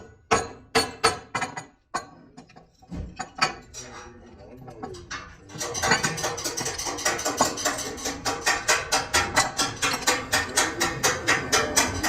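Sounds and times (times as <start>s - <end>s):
sharp metallic knocks: 0.0s - 2.2s, 4.8s - 12.0s.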